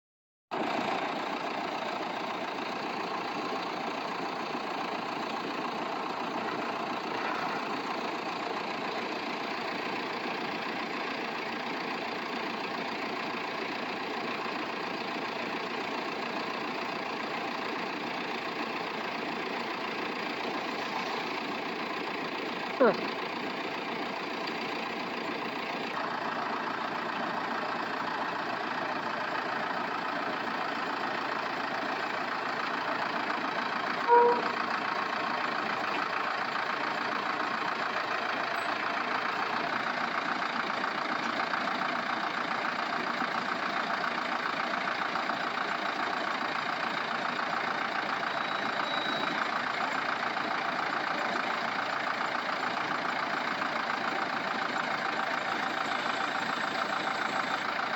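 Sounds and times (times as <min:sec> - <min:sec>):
engine running: 0:00.5 - 0:57.9
short beep: 0:34.1 - 0:34.6, 0:48.4 - 0:49.4.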